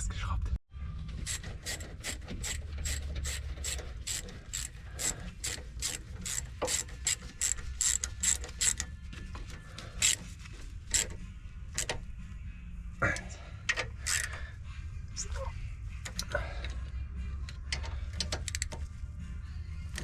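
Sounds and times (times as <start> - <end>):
ratchet wrench clicking: 1.2 - 8.9, 9.8 - 10.3, 10.9 - 12.0, 13.7 - 14.4, 17.5 - 18.9.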